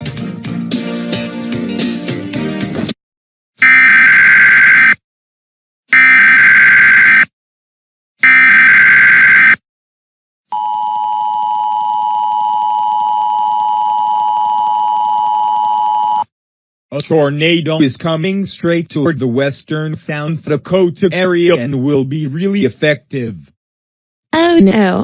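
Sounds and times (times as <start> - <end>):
harsh digital data bursts: 3.6 - 5.0, 6.0 - 7.2, 8.2 - 9.6
two-tone attention signal: 3.6 - 5.0, 6.0 - 7.2, 8.2 - 9.6.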